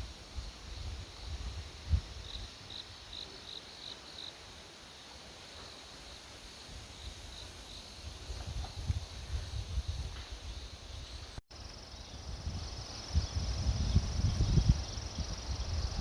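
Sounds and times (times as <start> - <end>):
wind rumble on microphone: 0.0 - 2.8, 8.0 - 11.4, 12.0 - 16.0
cricket chirping: 0.0 - 16.0.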